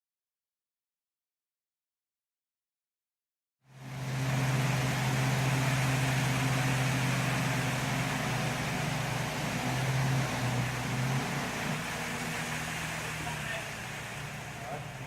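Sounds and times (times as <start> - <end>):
machinery humming: 3.8 - 15.0.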